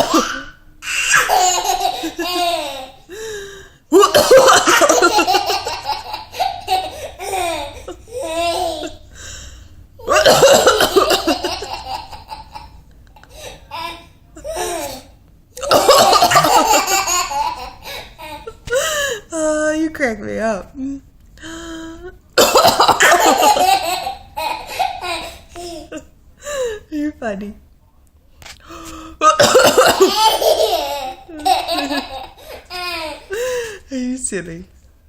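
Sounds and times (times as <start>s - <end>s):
baby belly-laughing: 0.0s - 3.1s, 3.9s - 9.0s, 10.0s - 15.0s, 15.6s - 18.6s, 22.4s - 26.0s, 29.2s - 33.5s.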